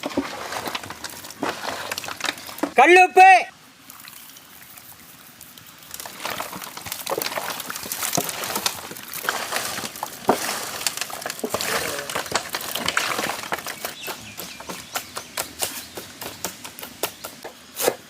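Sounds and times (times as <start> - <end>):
wet sloshing and rubbing: 0.0 - 2.8, 5.9 - 14.0.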